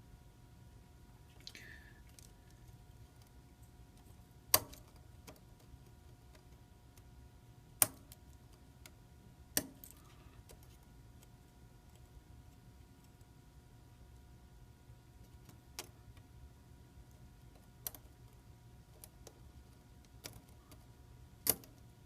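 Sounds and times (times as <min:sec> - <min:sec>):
small sharp clicks and taps: 0:01.4 - 0:07.1, 0:07.8 - 0:13.3, 0:17.0 - 0:21.9.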